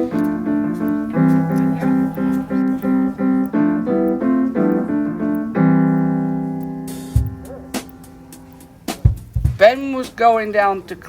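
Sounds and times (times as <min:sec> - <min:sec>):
piano music: 0:00.0 - 0:09.5.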